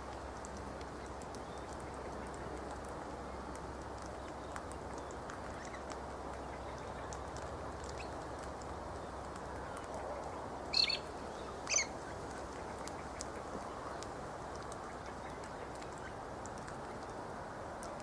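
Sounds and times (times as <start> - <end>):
background noise: 0.0 - 18.0
faint bird chirps: 10.7 - 11.9.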